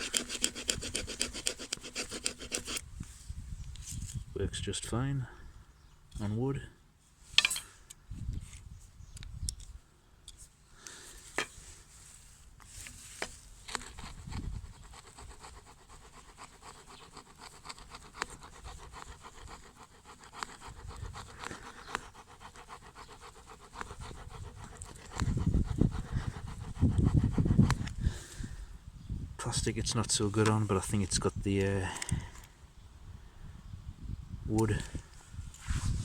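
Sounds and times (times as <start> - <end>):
saw rasping through plastic pipe: 0.0 - 2.8, 12.7 - 28.3.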